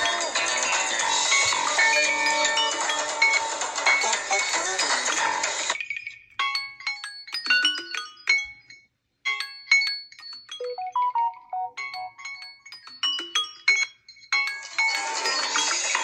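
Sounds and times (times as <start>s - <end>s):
smartphone ringtone melody: 10.5s - 16.0s.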